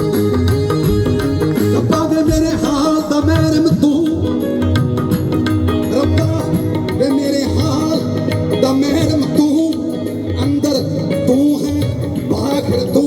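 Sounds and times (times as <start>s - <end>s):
wavering folk melody: 0.0s - 13.0s
steady drum strokes: 0.3s - 4.2s.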